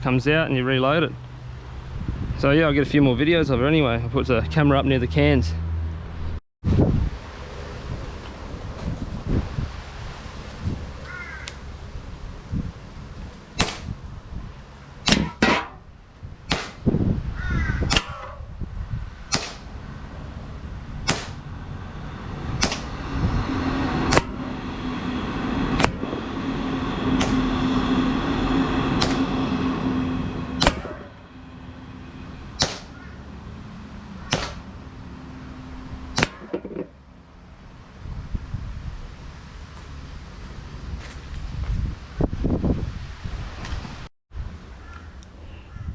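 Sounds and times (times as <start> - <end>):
wind buffeting microphone: 0.0 - 3.9, 6.3 - 14.8, 15.8 - 36.8, 37.6 - 44.6
gel blaster pistol shots: 27.2 - 27.5, 30.6 - 31.1, 32.6 - 33.1, 34.2 - 34.7, 36.2 - 36.5.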